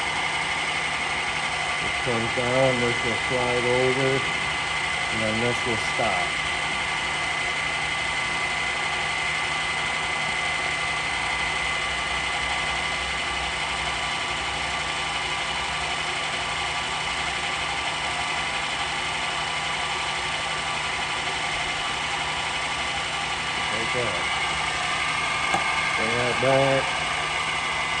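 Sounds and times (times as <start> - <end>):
drill press motor humming: 0.0 - 28.0
high gear whine: 0.0 - 28.0.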